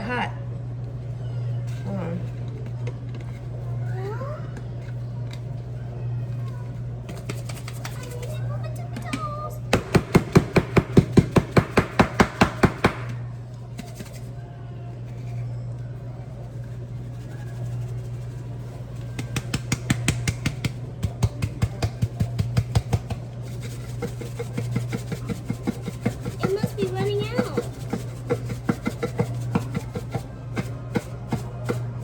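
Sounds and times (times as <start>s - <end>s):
container tapped and shaken: 6.3s - 14.3s, 17.2s - 32.0s.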